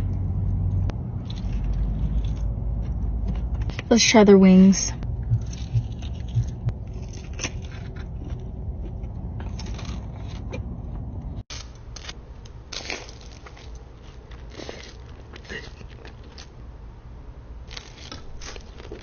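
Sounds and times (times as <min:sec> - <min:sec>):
low background rumble: 0:00.0 - 0:19.0
chicken wings being eaten: 0:12.7 - 0:16.6.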